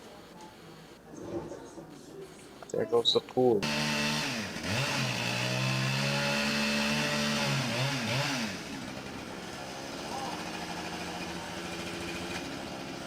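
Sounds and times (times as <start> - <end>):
chainsaw engine running: 3.6 - 13.0.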